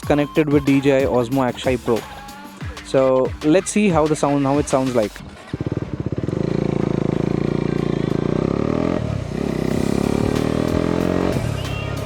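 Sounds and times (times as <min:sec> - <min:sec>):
motorcycle engine accelerating: 0:04.7 - 0:12.0.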